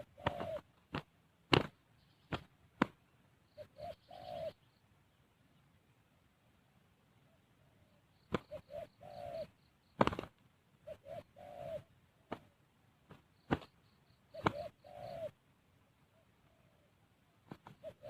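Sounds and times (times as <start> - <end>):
dove cooing: 0.0 - 0.8, 3.5 - 4.7, 7.2 - 12.6, 13.5 - 15.4, 16.1 - 18.0.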